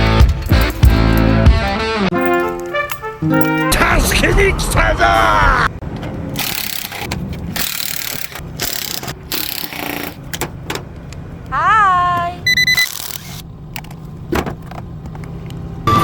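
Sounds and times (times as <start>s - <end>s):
tools and parts rattling: 0.0s - 3.9s, 6.4s - 10.6s.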